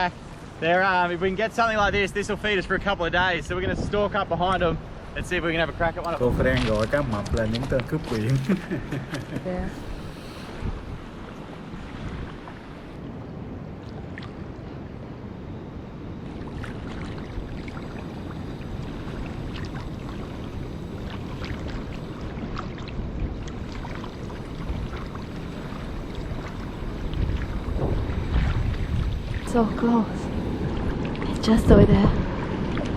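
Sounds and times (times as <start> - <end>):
sea water sloshing: 4.8 - 15.0, 16.1 - 32.9
small splashes and clicks: 6.0 - 9.2, 21.0 - 29.6.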